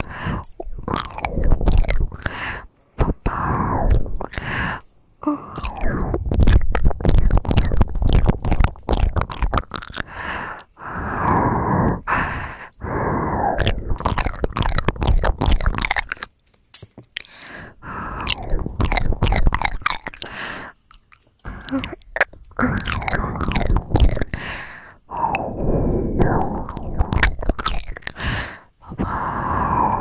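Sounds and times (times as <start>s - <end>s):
wet mouth clicks and smacks: 0.0s - 30.0s
breathy exhales: 10.0s - 13.9s, 24.2s - 27.2s, 28.0s - 30.0s.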